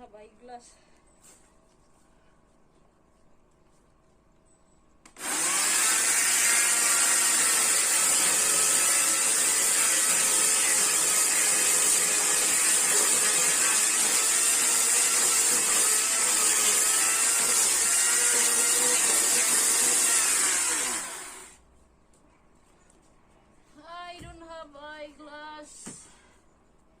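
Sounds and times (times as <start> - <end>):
chainsaw cutting wood: 5.1 - 21.6.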